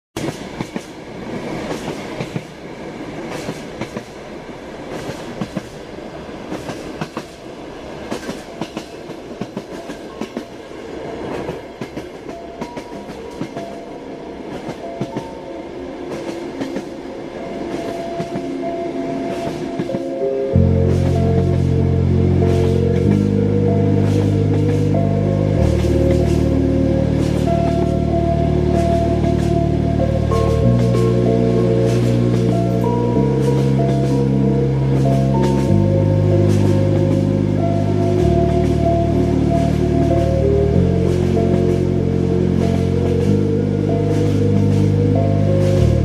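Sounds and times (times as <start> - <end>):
wheels clicking over track: 0.2 - 15.3, 16.0 - 46.0
train rumbling on rails: 0.2 - 46.0
steady tones: 12.2 - 46.0.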